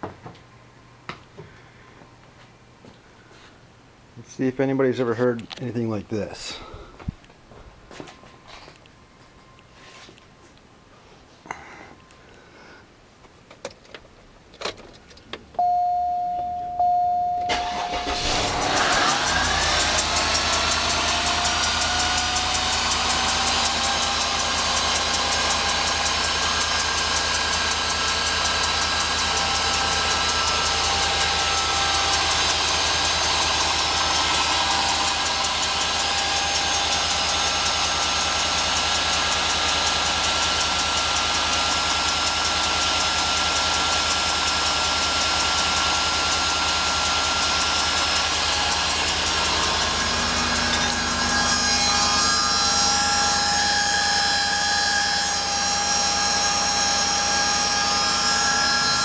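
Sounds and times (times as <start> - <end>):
car engine idling: 15.6 - 53.8.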